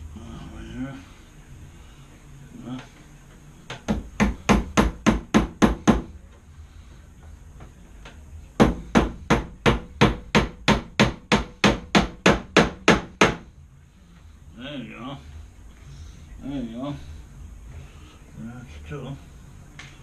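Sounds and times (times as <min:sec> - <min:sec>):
hammer hitting nail into wood: 0:03.7 - 0:06.1, 0:08.6 - 0:13.4.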